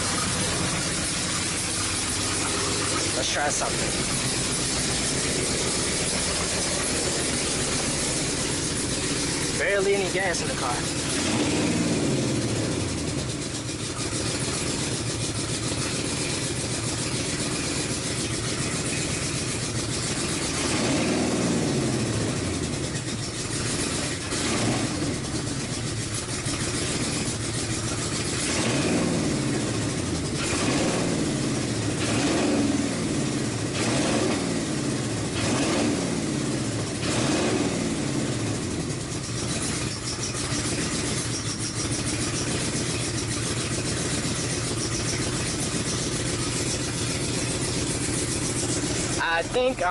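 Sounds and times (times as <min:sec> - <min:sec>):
car engine idling and revving: 0:00.0 - 0:49.9.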